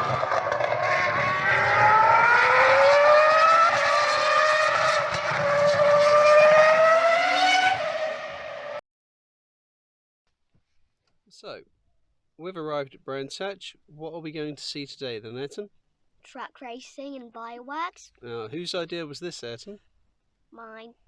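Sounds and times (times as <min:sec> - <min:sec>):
racing engines accelerating: 0:00.0 - 0:08.8.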